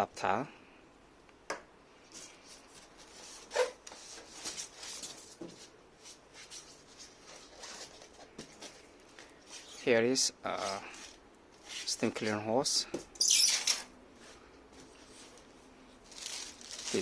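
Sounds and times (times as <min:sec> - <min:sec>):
rustling and rubbing: 0:02.1 - 0:12.4, 0:14.1 - 0:17.0.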